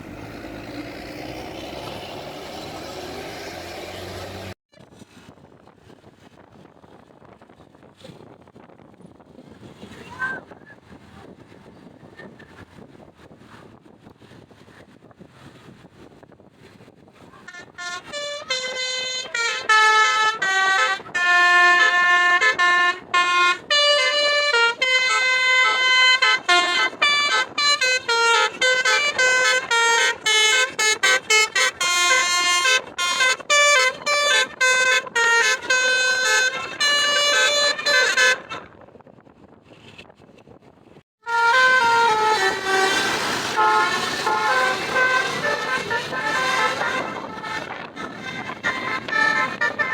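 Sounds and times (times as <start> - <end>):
bus horn melody: 0.0 - 4.6, 17.4 - 38.7, 41.2 - 49.9.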